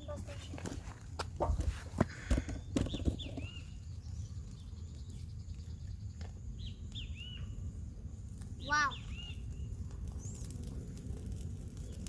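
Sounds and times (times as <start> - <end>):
low outdoor rumble: 0.0 - 12.0
bird chirping: 2.5 - 8.0, 8.6 - 10.5.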